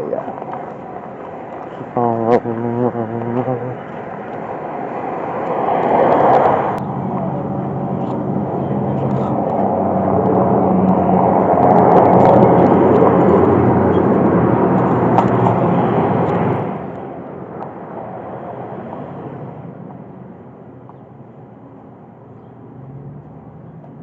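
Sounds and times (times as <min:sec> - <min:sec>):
vehicle driving past: 0:22.4 - 0:24.0.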